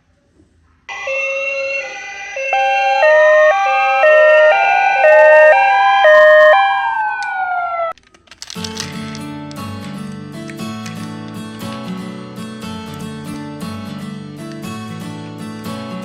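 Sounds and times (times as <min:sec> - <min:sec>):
rising and falling siren wails: 0:00.9 - 0:08.0
two-tone toy siren: 0:00.9 - 0:08.0.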